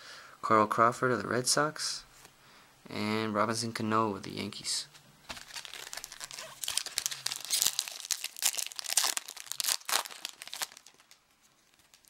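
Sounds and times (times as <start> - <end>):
card pack wrapper crinkling and tearing: 5.3 - 12.0.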